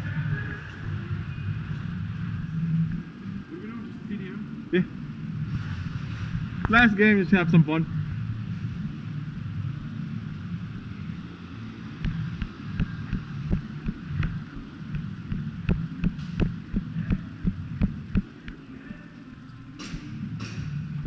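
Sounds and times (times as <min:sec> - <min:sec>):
steady low rumble: 0:07.8 - 0:21.0
soft thumps and clicks: 0:12.0 - 0:18.6.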